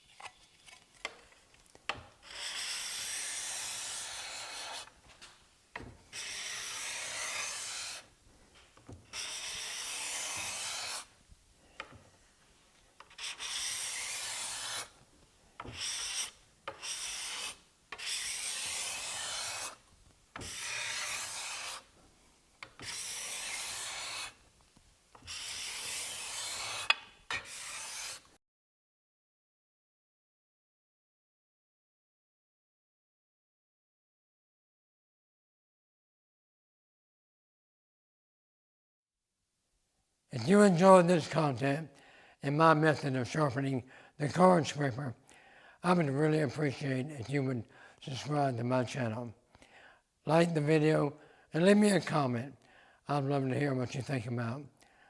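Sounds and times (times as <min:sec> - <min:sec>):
card scraper scraping wood: 0:01.9 - 0:05.0, 0:05.8 - 0:08.1, 0:08.9 - 0:11.1, 0:13.0 - 0:14.9, 0:15.6 - 0:19.8, 0:20.4 - 0:21.9, 0:22.7 - 0:24.4, 0:25.2 - 0:28.3.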